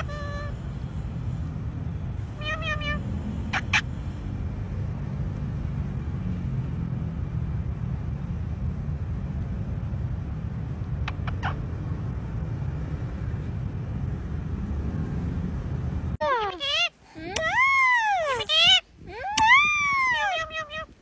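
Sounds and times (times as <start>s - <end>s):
parrot squeaks: 0.0s - 0.5s, 2.4s - 3.9s, 11.1s - 11.6s, 16.2s - 20.9s
parrot mimicking cat meow: 0.0s - 0.6s, 2.4s - 3.8s, 16.2s - 21.0s.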